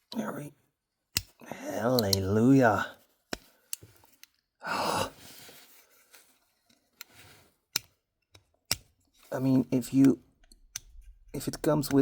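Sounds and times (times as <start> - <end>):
person sighing: 4.6 - 5.6.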